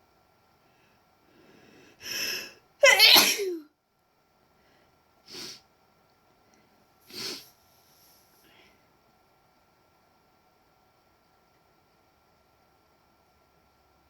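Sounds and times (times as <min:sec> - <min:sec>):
woman breathing in: 0:00.7 - 0:02.6
woman sneezing: 0:02.8 - 0:03.6.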